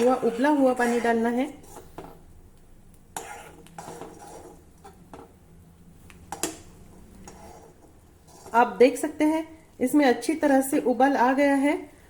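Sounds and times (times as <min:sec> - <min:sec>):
spoon scraping a pot: 0:00.0 - 0:02.3, 0:03.1 - 0:05.4, 0:06.3 - 0:09.1.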